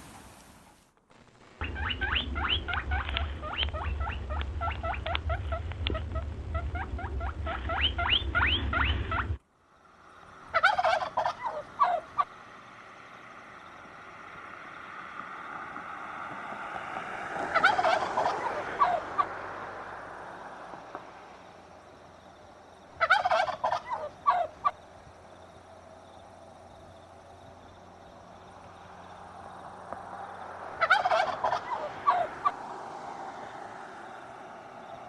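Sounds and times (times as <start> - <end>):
chicken calling: 1.6 - 9.4, 10.4 - 12.4, 17.4 - 19.4, 22.9 - 24.8, 30.8 - 32.8.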